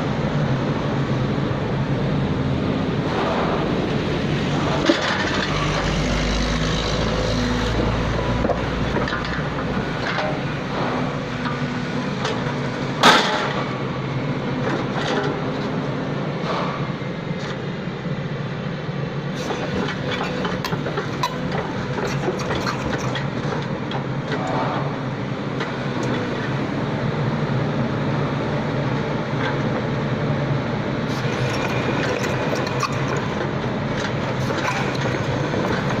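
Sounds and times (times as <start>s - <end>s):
excavator engine running: 0.0s - 36.0s.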